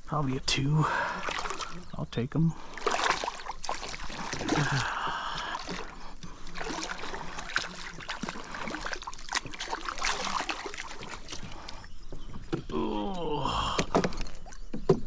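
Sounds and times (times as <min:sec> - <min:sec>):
water splashing and dripping: 0:00.8 - 0:01.9, 0:02.6 - 0:11.8
knocks against a kayak: 0:13.8 - 0:15.0.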